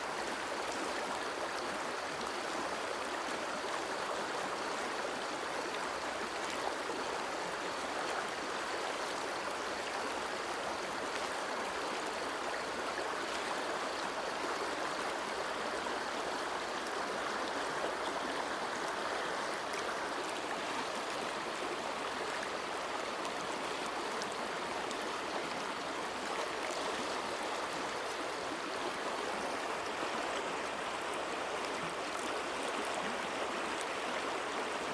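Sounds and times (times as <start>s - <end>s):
river water flowing over stones: 0.1s - 34.9s.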